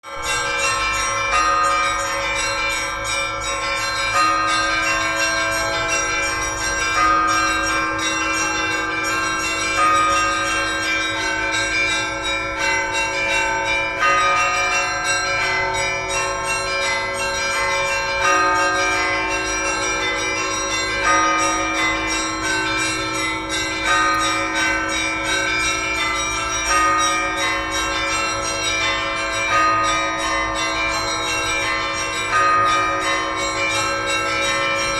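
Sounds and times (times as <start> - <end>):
church bells pealing: 0.0 - 34.9.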